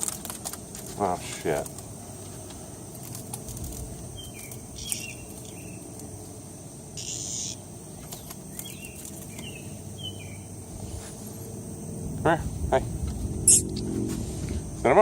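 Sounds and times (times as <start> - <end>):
cicada buzz: 0.0 - 15.0
high insect drone: 0.0 - 15.0
bird chirps: 4.1 - 5.9, 7.0 - 10.6, 13.4 - 13.9.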